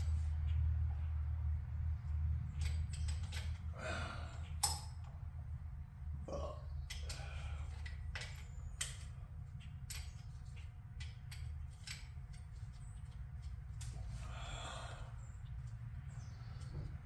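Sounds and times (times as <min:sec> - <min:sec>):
steady low hum: 0:00.0 - 0:17.0
metallic tool clicks and taps: 0:04.6 - 0:05.0, 0:07.8 - 0:09.1.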